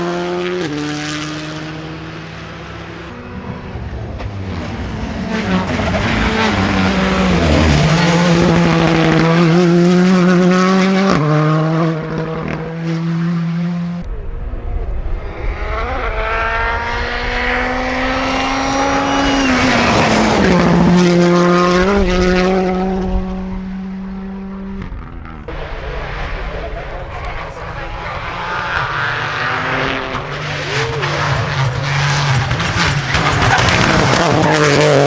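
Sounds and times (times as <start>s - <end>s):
car engine at high revs: 0.0s - 35.0s.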